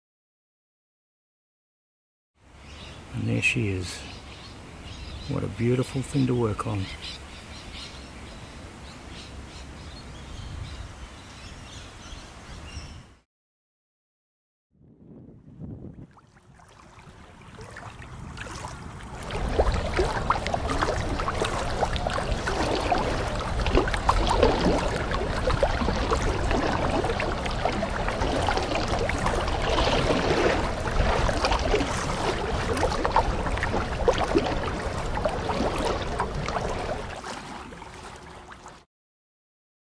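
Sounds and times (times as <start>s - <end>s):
water rushing and splashing: 16.1s - 38.9s.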